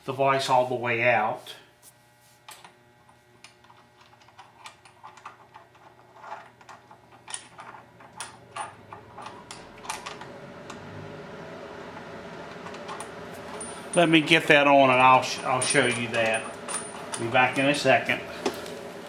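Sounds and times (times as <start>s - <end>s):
clicks and clinks of hardware: 15.2s - 17.7s.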